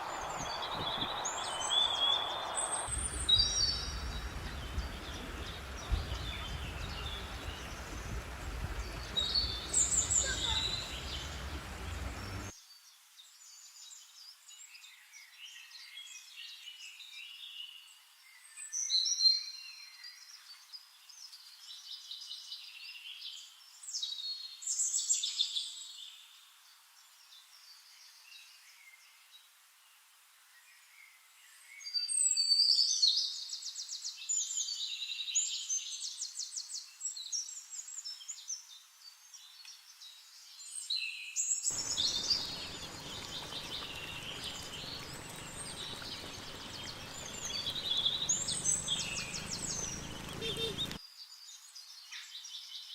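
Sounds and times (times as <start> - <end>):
small birds chirping: 0.0 - 12.6, 41.7 - 52.9
bird fast trill: 41.7 - 51.0.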